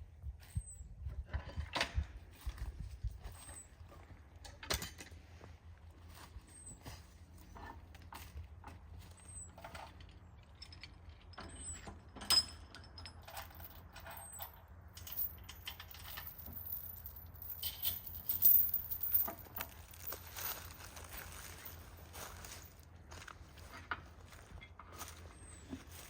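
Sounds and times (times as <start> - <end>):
harness and chains jingling: 13.2 - 21.8.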